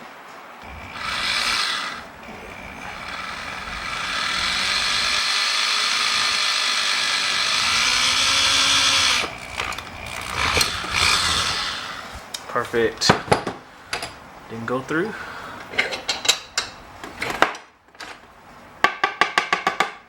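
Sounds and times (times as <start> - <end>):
electric drill boring into copper: 0.6 - 12.3.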